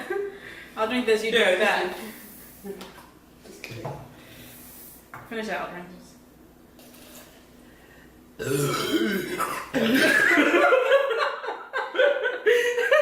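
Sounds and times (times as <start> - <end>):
woman belching: 8.4 - 10.3.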